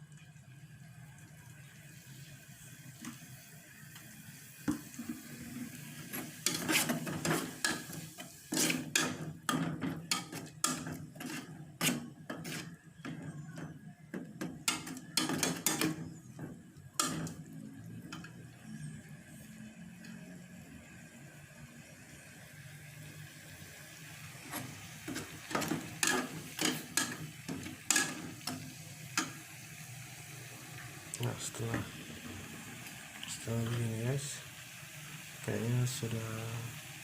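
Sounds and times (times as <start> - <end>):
utensils knocking on cookware: 8.6 - 17.4, 25.1 - 29.4.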